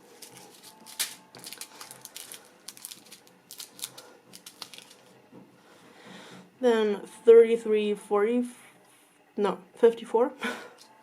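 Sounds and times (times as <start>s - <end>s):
plastic bags crinkling: 0.0s - 5.1s.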